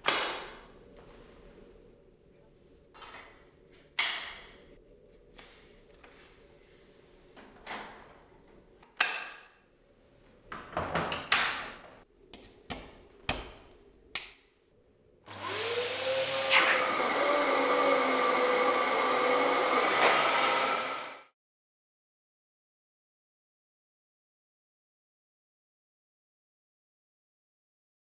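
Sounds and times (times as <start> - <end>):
vacuum cleaner motor whining: 15.3 - 21.3.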